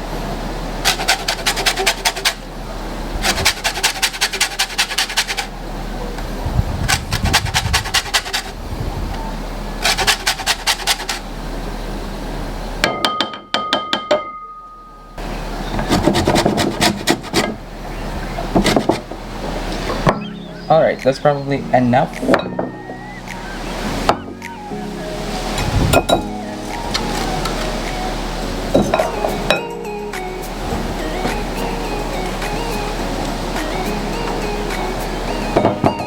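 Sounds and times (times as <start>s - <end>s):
lemon rind rasping on grater: 0.9s - 2.4s, 3.2s - 5.5s, 6.9s - 8.6s, 9.8s - 11.2s, 15.9s - 17.4s.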